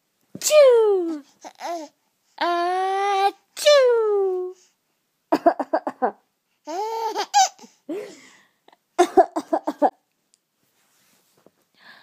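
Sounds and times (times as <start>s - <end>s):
baby laughing: 5.3s - 7.8s.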